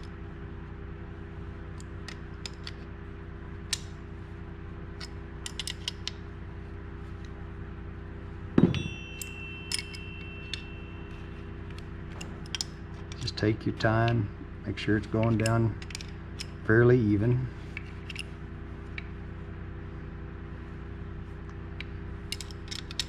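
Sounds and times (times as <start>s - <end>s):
steady low hum: 0.0s - 23.0s
small metallic clicks and creaks: 5.0s - 6.2s, 9.2s - 13.4s, 15.0s - 16.6s, 17.7s - 19.1s, 22.3s - 23.0s
metallic ring: 8.5s - 13.5s
heavy knock: 8.6s - 8.9s.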